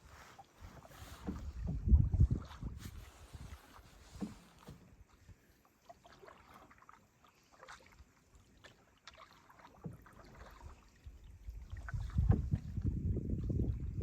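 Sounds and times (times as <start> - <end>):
paddle splashing in calm water: 0.0 - 14.0.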